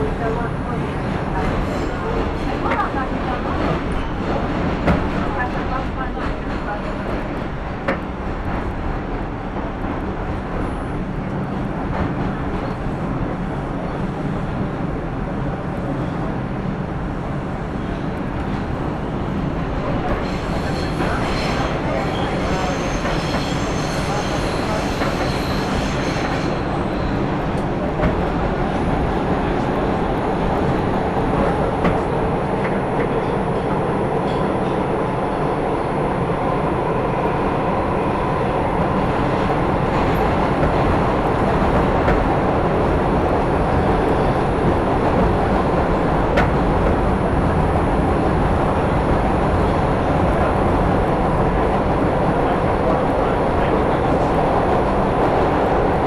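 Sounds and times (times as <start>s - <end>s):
train wheels rumbling on rails: 0.0s - 56.0s
high wheel squeal: 20.3s - 27.2s.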